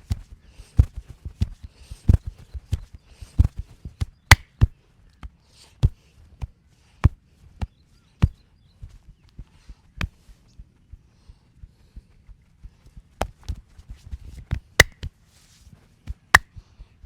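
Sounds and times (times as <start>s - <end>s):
hands slapping a body: 2.2s - 4.7s, 14.4s - 15.1s.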